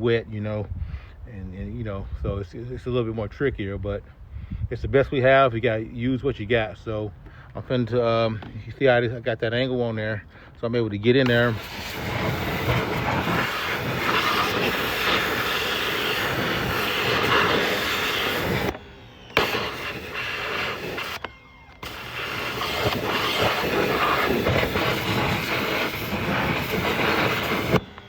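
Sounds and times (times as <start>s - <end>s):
pressure washer spray hissing: 11.2s - 28.0s.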